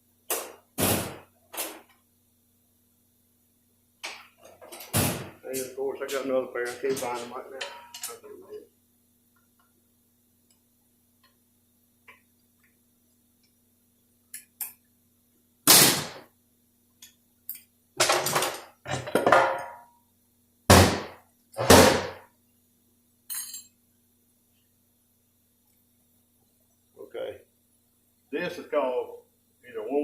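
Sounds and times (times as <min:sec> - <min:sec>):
light metal clinks: 0:23.3 - 0:23.8.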